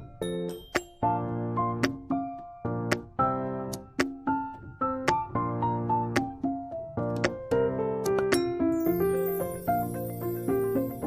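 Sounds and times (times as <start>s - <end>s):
keyboard notes over a beat: 0.0s - 8.7s.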